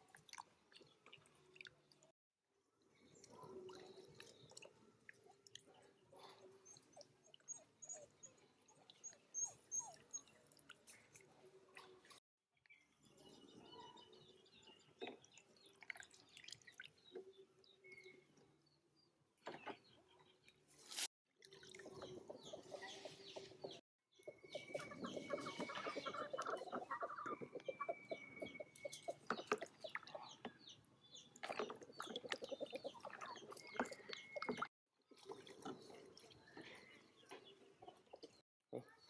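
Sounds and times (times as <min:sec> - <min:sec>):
chickens clucking: 0:24.4 - 0:30.3.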